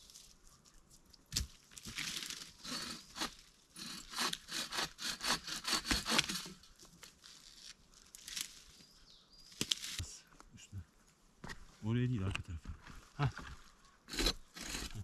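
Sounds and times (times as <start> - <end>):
hand saw cutting wood: 2.6 - 6.6, 14.1 - 15.0.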